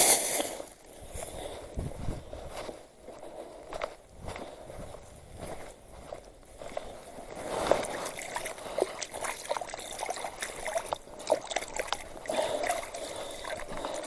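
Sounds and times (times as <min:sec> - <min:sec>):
water splashing and trickling: 0:07.5 - 0:14.0.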